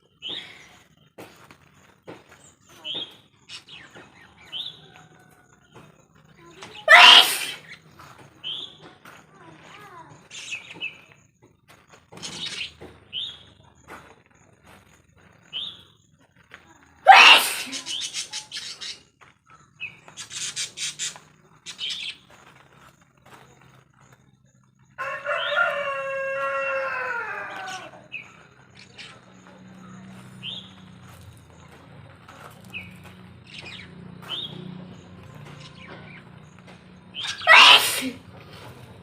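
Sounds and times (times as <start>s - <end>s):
bird chirps: 7.5s - 8.9s, 10.2s - 11.4s, 15.3s - 16.1s, 17.7s - 22.3s
rooster crowing: 25.0s - 28.2s.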